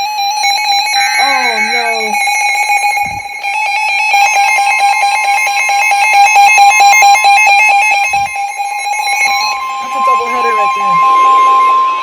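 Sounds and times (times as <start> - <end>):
higher steady tone: 1.0 - 2.4
pulsing alarm tone: 1.0 - 3.4, 9.4 - 12.0.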